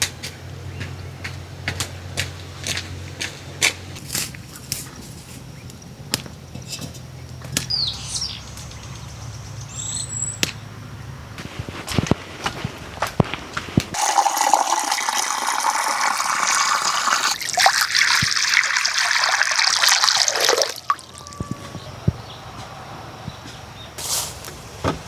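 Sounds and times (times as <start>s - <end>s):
bird chirps: 7.2s - 10.6s.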